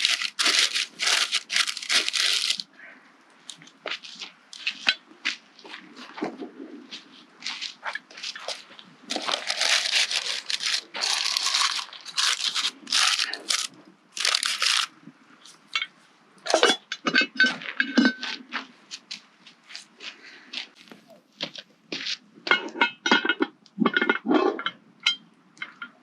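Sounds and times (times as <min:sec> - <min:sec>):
shovel scraping through coals: 0:00.0 - 0:02.7, 0:07.4 - 0:15.0.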